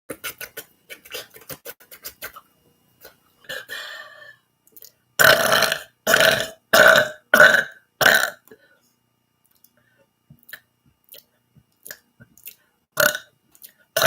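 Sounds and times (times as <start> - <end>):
person burping loudly: 5.2 - 8.4, 13.0 - 13.3.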